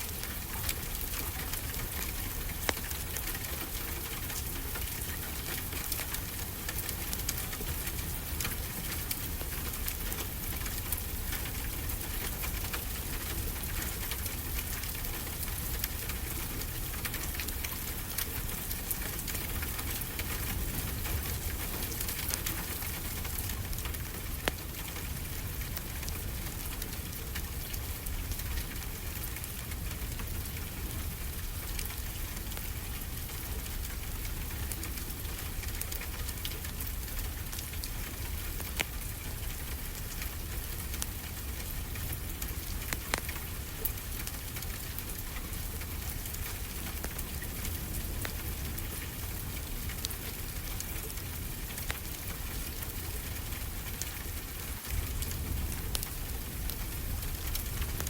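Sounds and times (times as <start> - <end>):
rain on glass roof: 0.0 - 58.0
wood fire crackling: 0.0 - 58.0
fire pops and snaps: 17.7 - 25.0, 40.7 - 50.2, 54.8 - 58.0.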